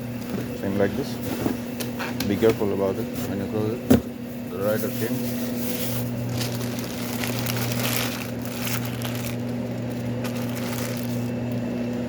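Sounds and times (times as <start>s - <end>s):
low electrical hum: 0.0s - 12.0s
plastic packaging crinkling: 5.6s - 11.6s.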